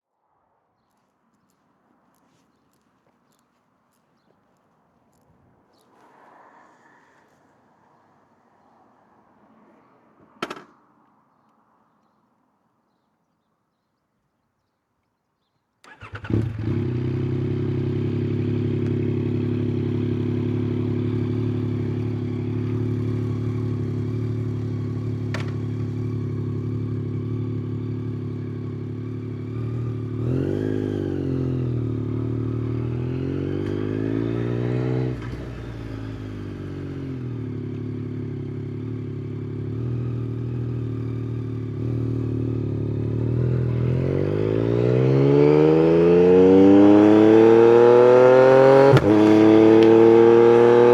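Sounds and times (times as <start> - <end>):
motorcycle engine idling and revving: 1.4 - 7.4, 15.8 - 50.9.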